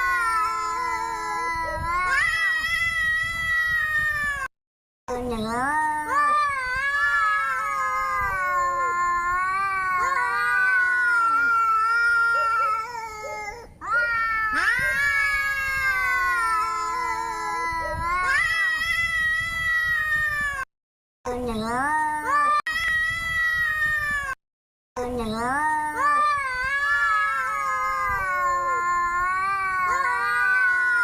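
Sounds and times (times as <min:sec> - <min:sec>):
cat yowling: 0:07.0 - 0:18.9, 0:26.6 - 0:31.0.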